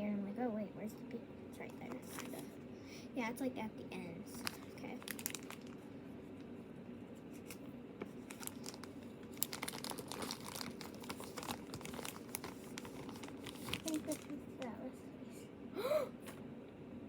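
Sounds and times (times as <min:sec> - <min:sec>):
plastic packaging crinkling and tearing: 0:01.8 - 0:02.5, 0:04.3 - 0:05.9, 0:07.3 - 0:14.7.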